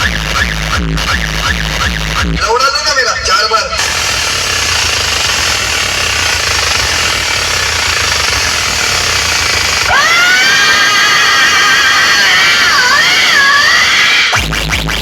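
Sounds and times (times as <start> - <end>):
pulsing bass from loudspeakers: 0.0 - 10.8, 14.3 - 15.0
siren-like synth sweep: 6.7 - 14.4.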